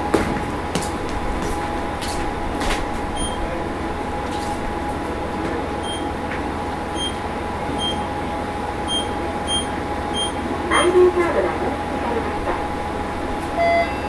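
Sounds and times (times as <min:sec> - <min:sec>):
railcar interior drone: 0:00.0 - 0:14.0
short high beep: 0:13.6 - 0:14.0.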